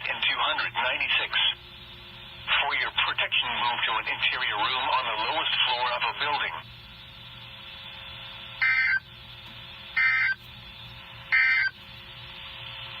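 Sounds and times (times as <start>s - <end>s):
faint broadcast hiss and hum: 0.0s - 13.0s
short digital squawks: 8.6s - 9.0s, 10.0s - 10.4s, 11.3s - 11.7s.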